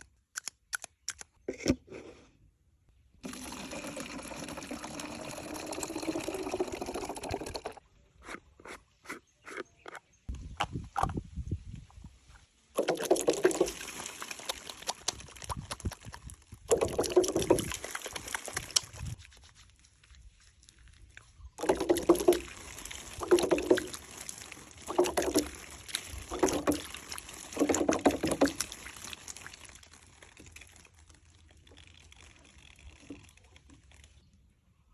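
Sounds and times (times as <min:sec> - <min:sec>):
water pouring and splashing: 0:03.2 - 0:07.8, 0:12.7 - 0:34.2.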